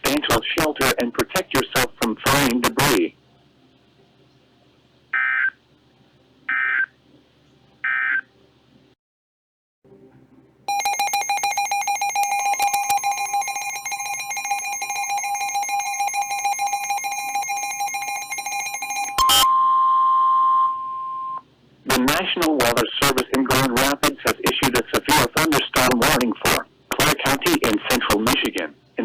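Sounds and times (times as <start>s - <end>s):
data bursts: 10.7s - 19.5s
harsh two-tone alert signal: 10.7s - 21.4s
single steady tone: 19.1s - 21.4s.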